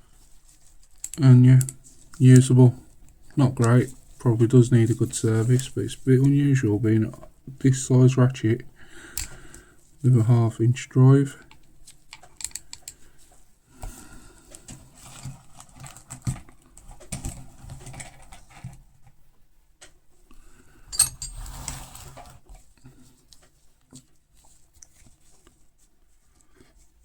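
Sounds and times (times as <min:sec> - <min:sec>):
metal hand tools clattering: 0:20.9 - 0:21.5.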